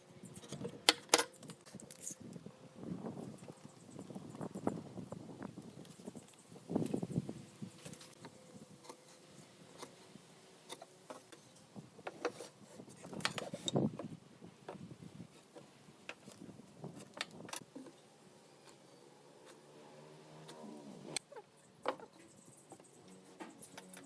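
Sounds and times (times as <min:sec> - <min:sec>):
wood and tools clicking and knocking: 0:00.3 - 0:02.2, 0:10.7 - 0:18.0, 0:21.2 - 0:24.0.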